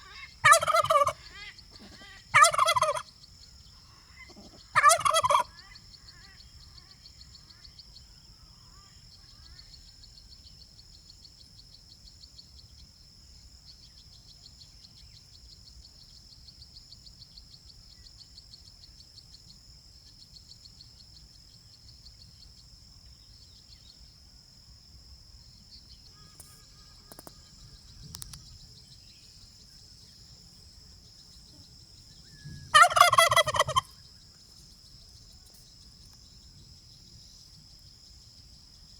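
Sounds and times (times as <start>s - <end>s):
turkey gobbling: 0.0s - 3.0s, 4.2s - 5.6s, 32.7s - 34.0s
faint high-pitched buzz: 5.5s - 32.7s.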